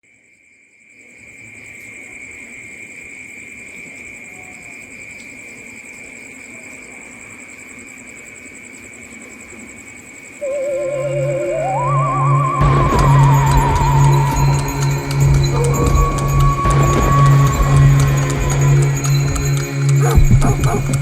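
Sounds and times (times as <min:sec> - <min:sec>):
crickets trilling: 0:00.1 - 0:21.0
wavering electronic music tone: 0:10.4 - 0:21.0.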